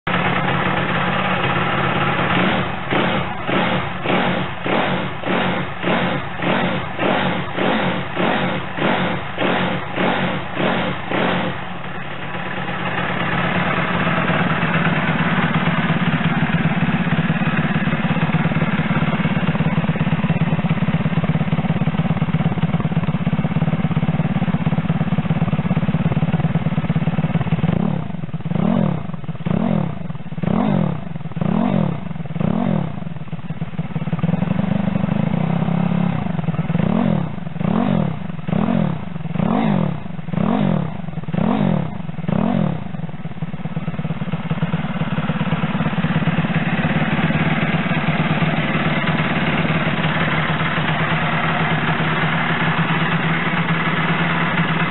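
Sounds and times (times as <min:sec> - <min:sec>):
minibike engine revving: 0:00.1 - 0:12.0, 0:24.8 - 0:33.1, 0:34.1 - 0:43.1, 0:44.1 - 0:54.9.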